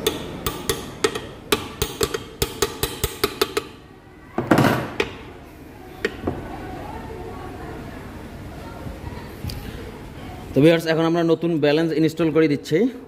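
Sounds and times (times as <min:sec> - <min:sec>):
tools tapping on engine parts: 0:00.0 - 0:03.8, 0:04.5 - 0:05.3.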